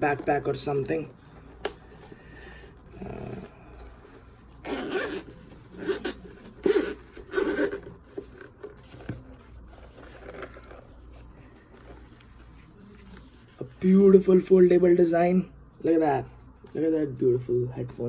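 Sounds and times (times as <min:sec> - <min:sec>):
handling rustles: 0:00.0 - 0:14.0
zipper being pulled open: 0:03.0 - 0:11.0.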